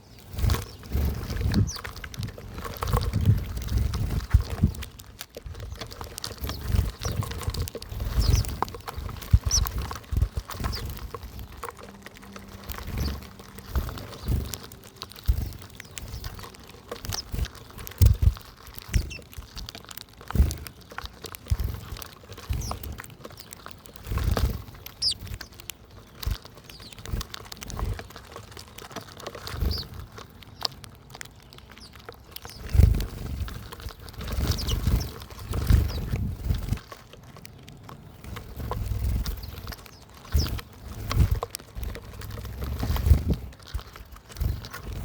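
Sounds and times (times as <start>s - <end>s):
birds chirping: 0.0s - 45.0s
rustling: 0.0s - 45.0s.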